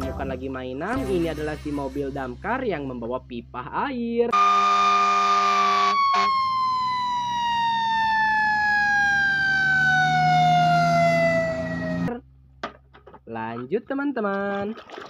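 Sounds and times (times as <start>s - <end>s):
siren winding down: 4.3s - 12.2s.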